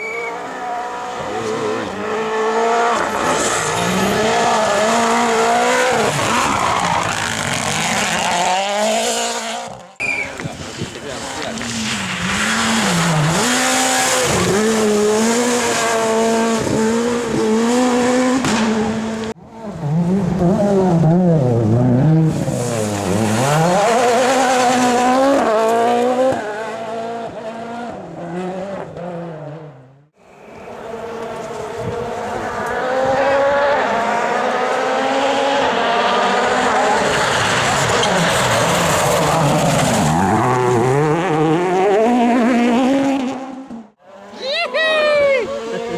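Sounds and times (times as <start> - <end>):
rally car engines revving: 0.0 - 44.6, 45.2 - 45.9.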